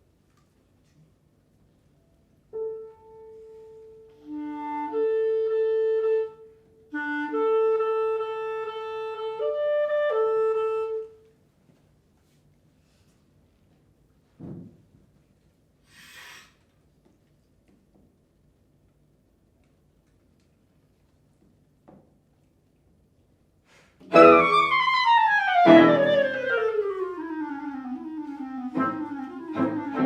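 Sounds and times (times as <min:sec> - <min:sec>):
clarinet long held notes: 0:02.6 - 0:11.3, 0:24.1 - 0:30.0
lower accompanying note: 0:24.1 - 0:30.0.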